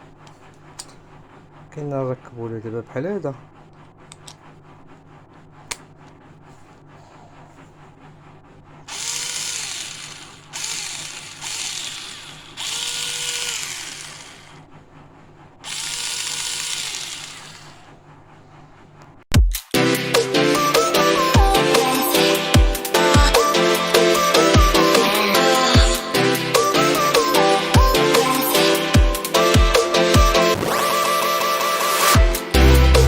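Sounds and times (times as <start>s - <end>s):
cordless drill motor whining: 8.9s - 14.7s, 15.6s - 18.0s.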